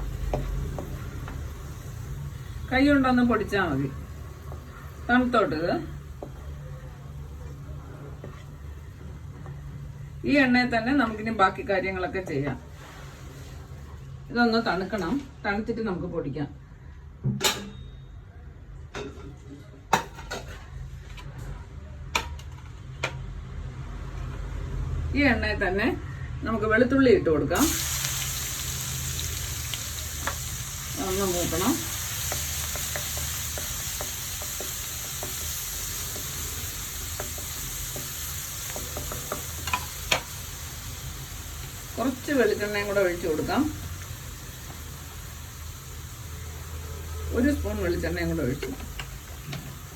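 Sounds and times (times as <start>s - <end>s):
garlic sizzling in oil: 0.0s - 14.0s, 27.6s - 49.9s
spoon scraping and tapping pan: 32.2s - 40.4s.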